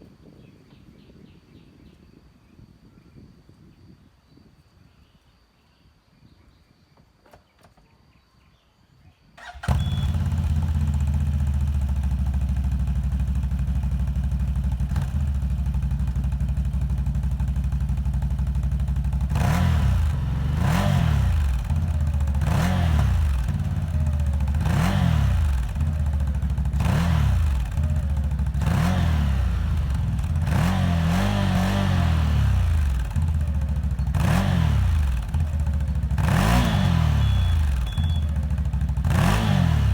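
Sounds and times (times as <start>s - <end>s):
atv engine idling and revving: 9.4s - 39.9s.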